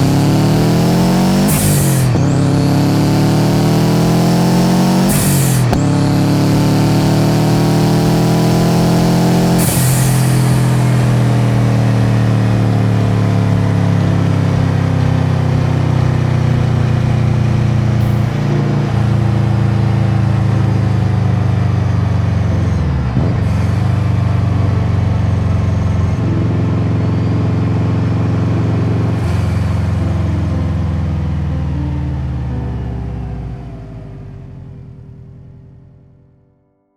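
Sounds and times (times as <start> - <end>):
blow-off valve hiss: 0.0 - 21.2
car engine revving through gear changes: 0.0 - 31.7.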